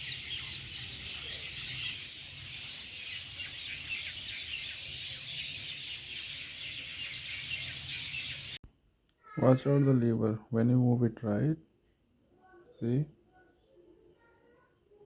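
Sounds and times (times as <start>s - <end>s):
small birds chirping: 0.0s - 8.6s.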